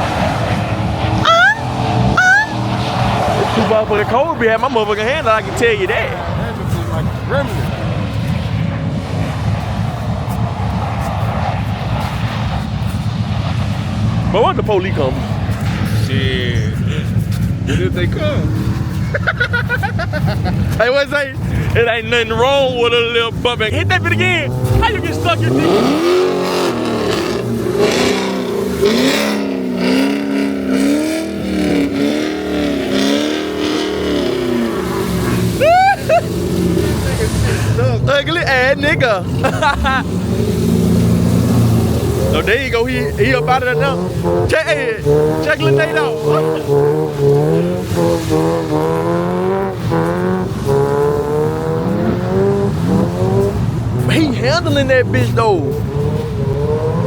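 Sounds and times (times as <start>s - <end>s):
wheels spinning in snow: 0.0s - 22.8s
car engine revving: 0.0s - 57.0s.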